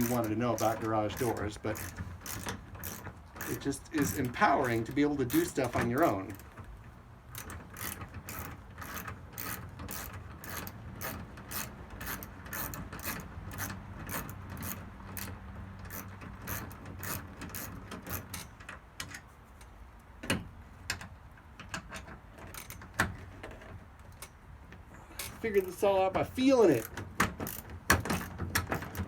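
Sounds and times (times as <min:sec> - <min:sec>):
hand ratchet clicking: 0:00.0 - 0:06.6, 0:07.3 - 0:19.2, 0:26.4 - 0:29.0.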